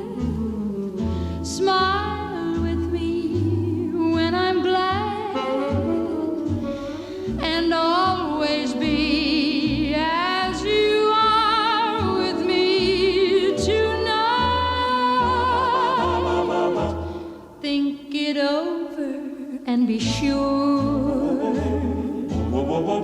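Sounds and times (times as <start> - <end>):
person singing a slow ballad: 0.0 - 5.1, 17.6 - 23.0
instrumental backing with bass: 0.0 - 17.6, 20.0 - 23.0.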